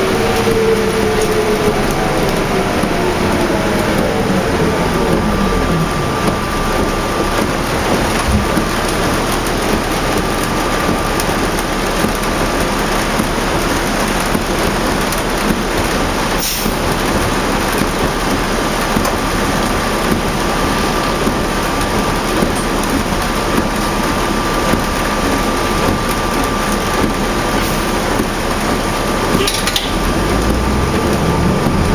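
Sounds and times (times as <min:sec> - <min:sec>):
thin steady whine: 0:00.0 - 0:11.6
bus diesel engine running: 0:00.0 - 0:31.9
heavy rain: 0:00.0 - 0:31.9
wet road noise: 0:00.0 - 0:31.9.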